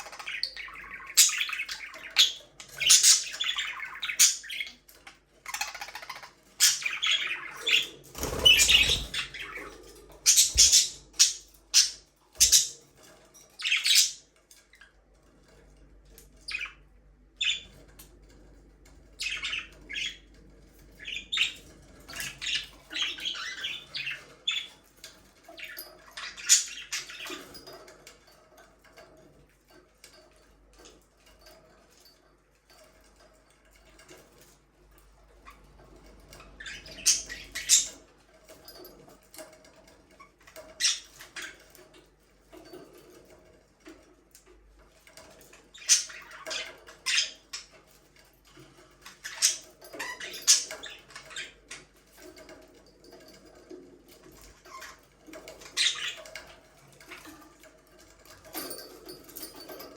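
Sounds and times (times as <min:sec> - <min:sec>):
budgerigars chirping and squawking: 0:00.0 - 0:14.3, 0:19.2 - 0:24.8, 0:25.6 - 0:27.8, 0:36.3 - 0:38.6, 0:40.5 - 0:41.8, 0:45.2 - 0:47.8, 0:49.0 - 0:52.5, 0:54.4 - 0:57.2.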